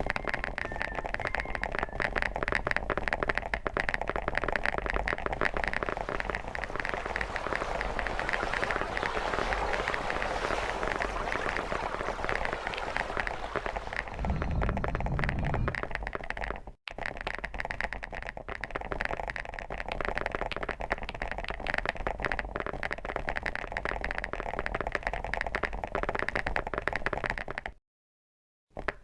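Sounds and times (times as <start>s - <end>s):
fast typing on keyboard: 0.0s - 7.8s, 14.2s - 27.8s.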